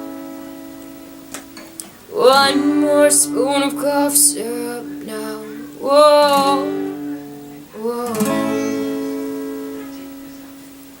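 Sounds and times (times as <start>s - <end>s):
acoustic guitar strumming: 0.0s - 11.0s
person singing: 2.1s - 10.5s.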